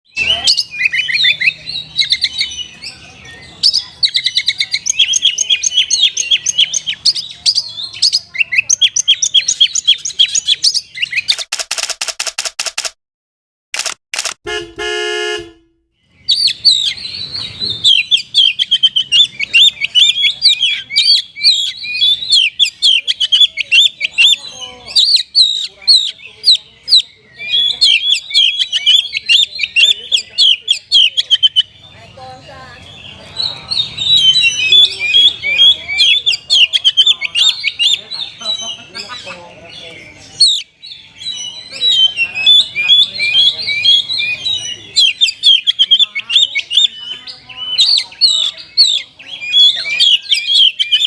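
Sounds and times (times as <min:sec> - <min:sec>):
bird singing chirps and whistles: 0:00.0 - 0:11.4, 0:16.0 - 0:31.7, 0:33.4 - 0:38.8, 0:40.4 - 0:51.0
short honk-like tone: 0:14.4 - 0:15.8.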